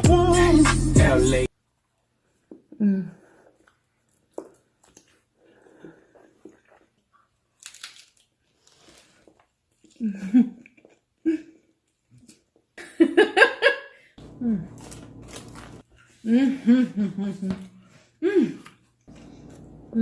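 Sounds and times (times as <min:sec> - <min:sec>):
wordless vocal noises: 0:00.0 - 0:01.5
chewing and smacking: 0:03.4 - 0:10.0.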